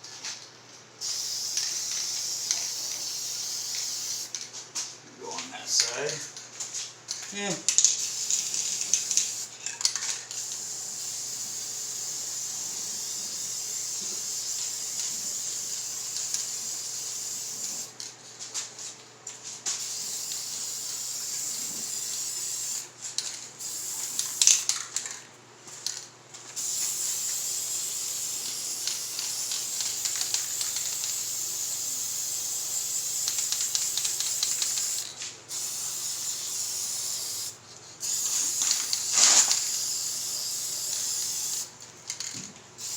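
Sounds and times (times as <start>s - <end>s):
spray paint hissing: 1.0s - 4.4s, 7.8s - 9.5s, 10.3s - 18.0s, 19.7s - 22.9s, 23.6s - 24.8s, 26.6s - 42.9s.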